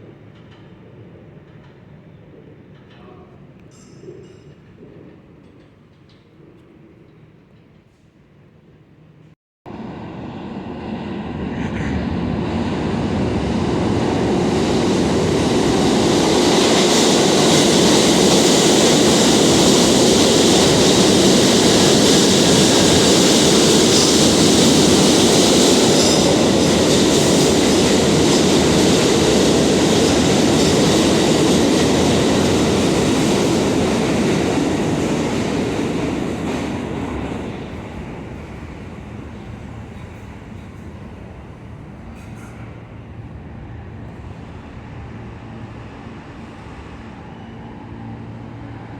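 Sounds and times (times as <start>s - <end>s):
subway train rumble and rail clatter: 0.0s - 48.9s.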